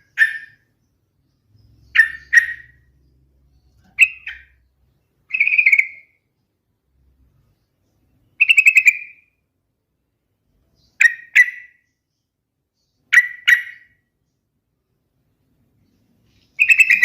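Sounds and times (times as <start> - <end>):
bird singing bubbly phrases: 5.3 - 6.2, 16.6 - 17.0.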